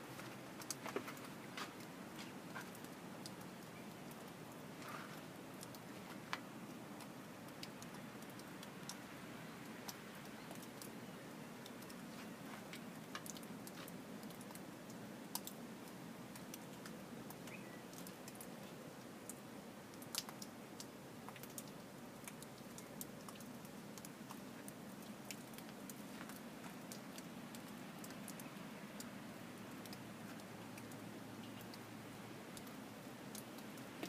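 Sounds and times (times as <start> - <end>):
faint sharp ticks and clicks: 11.6 - 31.9, 32.5 - 34.0.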